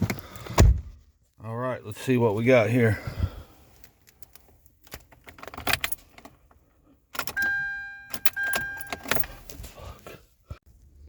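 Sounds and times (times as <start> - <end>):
car keys jangling: 3.8 - 9.7.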